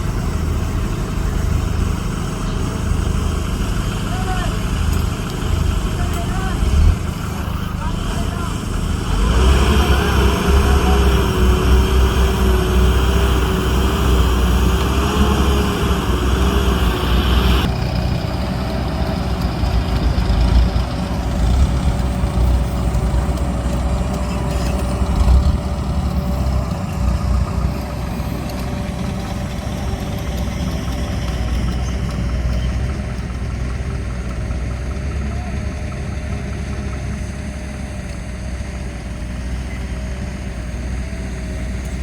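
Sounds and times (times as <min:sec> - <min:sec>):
heavy machinery engine rumbling: 0:00.0 - 0:42.0
thin even whine: 0:09.3 - 0:17.9.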